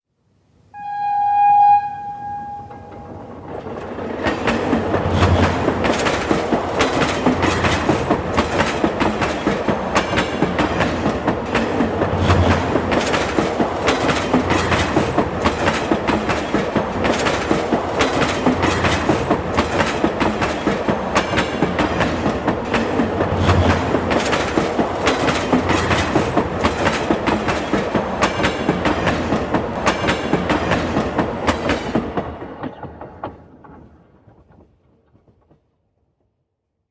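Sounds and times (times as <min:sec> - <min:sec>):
train horn blast: 0:00.8 - 0:03.4
train wheels clattering: 0:01.8 - 0:35.7.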